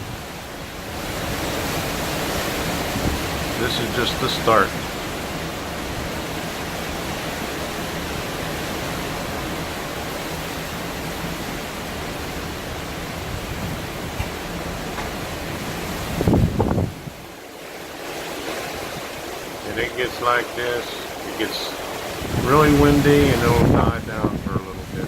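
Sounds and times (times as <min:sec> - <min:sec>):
hurricane wind blowing hard: 0:00.0 - 0:25.0
wind gusts buffeting microphone: 0:00.0 - 0:25.0.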